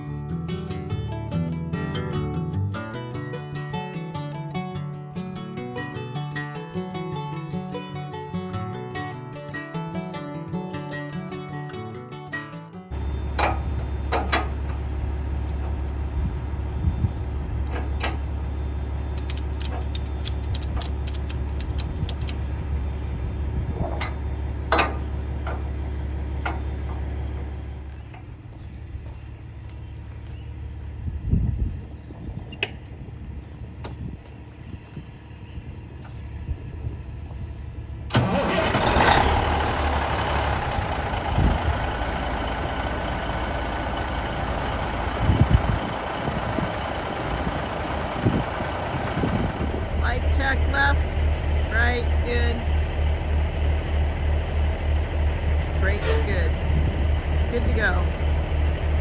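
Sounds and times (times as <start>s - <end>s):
diesel truck engine idling: 12.9s - 32.2s, 34.4s - 59.0s.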